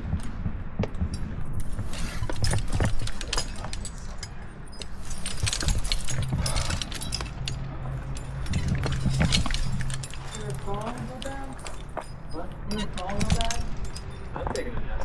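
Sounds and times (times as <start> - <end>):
metal climbing gear clinking: 0.0 - 15.0.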